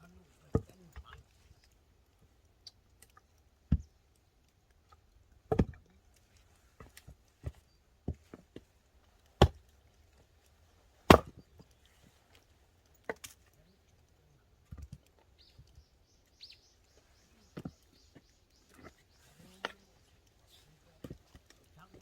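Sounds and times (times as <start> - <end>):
axe chopping wood: 5.5 - 5.8, 9.4 - 9.7, 11.0 - 11.4.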